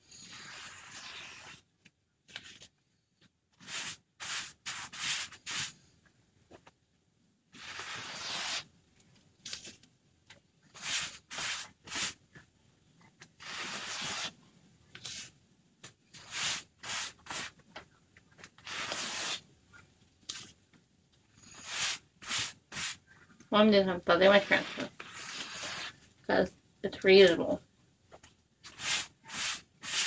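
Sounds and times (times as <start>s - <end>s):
rubbing strokes on paper: 0.1s - 1.6s, 3.6s - 5.8s, 7.6s - 8.6s, 10.7s - 12.2s, 16.1s - 17.6s, 21.4s - 26.0s, 28.6s - 30.0s.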